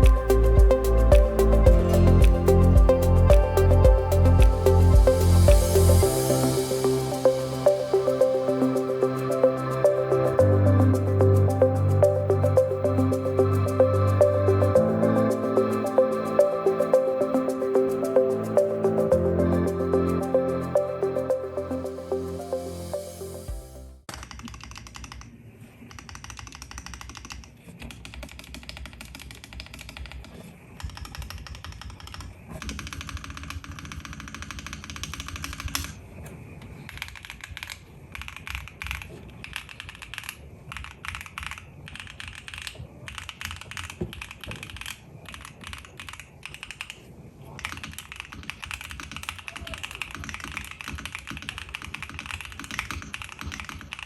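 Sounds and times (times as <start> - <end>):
mechanical keyboard typing: 24.1 - 36.0, 36.9 - 54.0.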